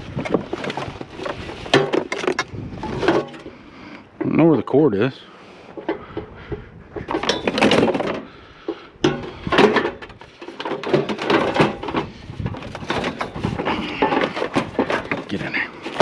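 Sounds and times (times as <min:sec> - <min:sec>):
metal and plastic scrap clattering: 0:00.0 - 0:03.6, 0:07.0 - 0:16.0.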